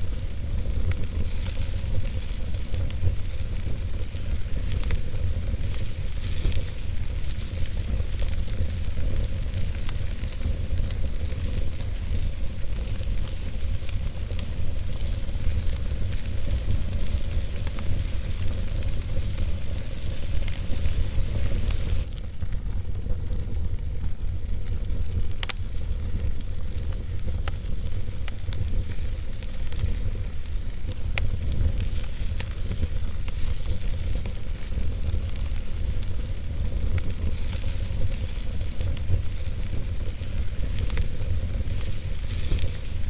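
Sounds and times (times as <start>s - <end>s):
fire crackles and pops: 0.0s - 43.0s
wood fire hissing and rumbling: 0.0s - 43.0s.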